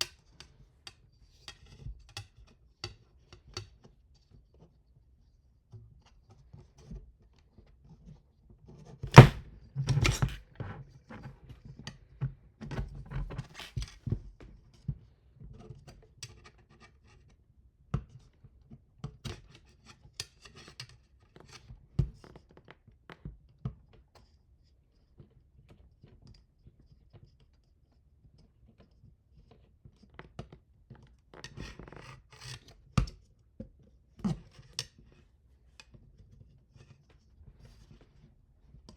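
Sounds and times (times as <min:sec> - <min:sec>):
sharp knock: 0:09.1 - 0:09.4
clicks scrapes and knocks of parts: 0:09.1 - 0:10.4.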